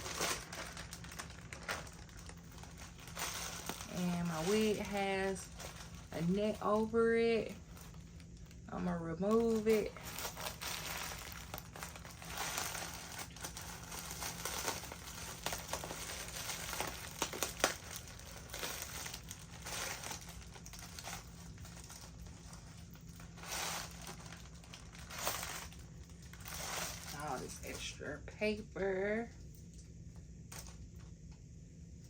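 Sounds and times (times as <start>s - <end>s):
packing paper crinkling: 0.0s - 28.0s.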